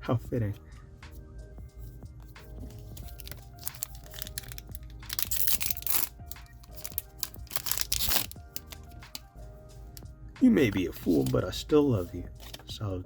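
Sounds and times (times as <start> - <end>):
background music: 0.0 - 13.0
foil wrapper crinkling and tearing: 3.0 - 9.3.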